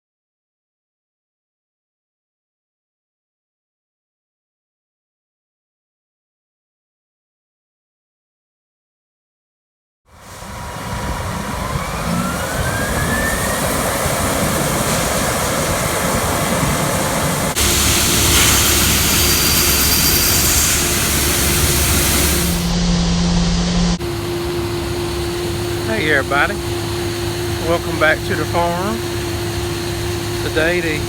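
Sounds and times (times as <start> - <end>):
combine harvester drone: 10.1 - 31.0
rising whine: 10.1 - 31.0.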